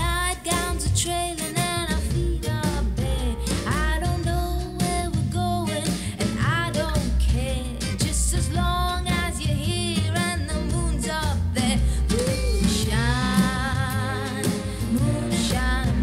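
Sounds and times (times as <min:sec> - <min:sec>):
song through computer speakers: 0:12.0 - 0:16.0.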